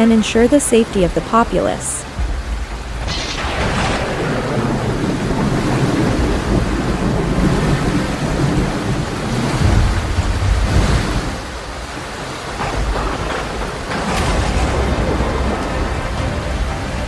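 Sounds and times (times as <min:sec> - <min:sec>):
heavy rain: 0:00.0 - 0:17.0
deep thunder rumble: 0:02.1 - 0:17.0
sharp hits: 0:02.2 - 0:06.4, 0:09.5 - 0:17.0.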